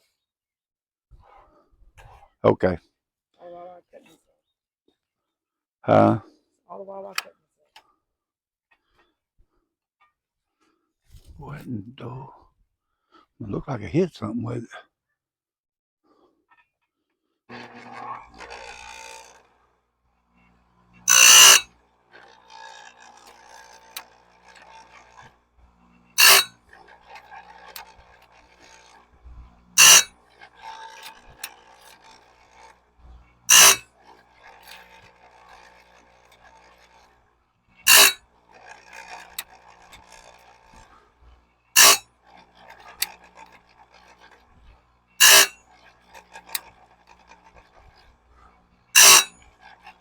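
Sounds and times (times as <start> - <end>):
grinder wheel grinding metal teeth: 17.5 - 50.0
quieter grinder rasp: 17.5 - 50.0.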